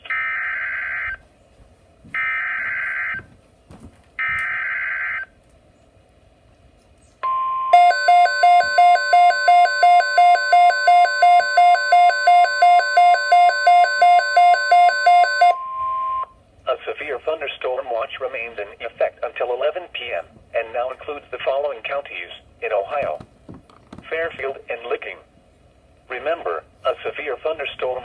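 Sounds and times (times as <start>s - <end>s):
pulsing electronic beep: 7.3s - 16.3s
steady alert tone: 7.7s - 16.2s.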